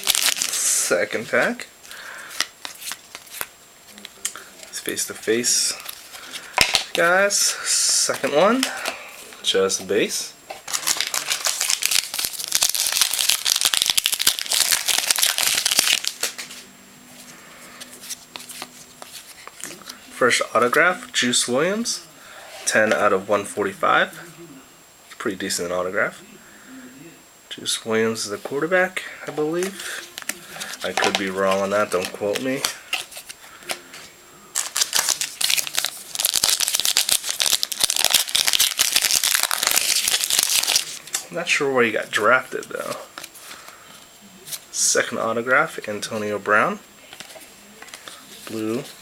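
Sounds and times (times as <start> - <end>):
plastic wrapper crinkling: 0.0 - 0.7, 2.4 - 4.7, 10.6 - 16.6, 29.6 - 33.8, 34.5 - 41.2.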